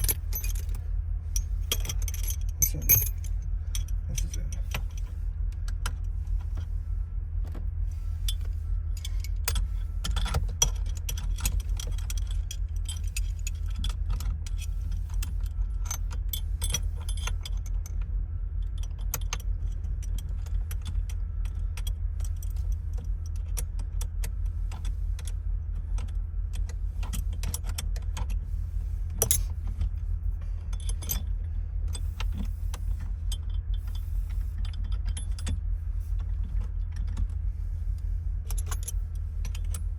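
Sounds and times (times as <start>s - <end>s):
keys jangling: 0.0s - 0.8s, 1.7s - 4.5s
small metal parts clicking: 0.0s - 0.8s, 1.4s - 4.6s
steady low hum: 0.0s - 39.9s.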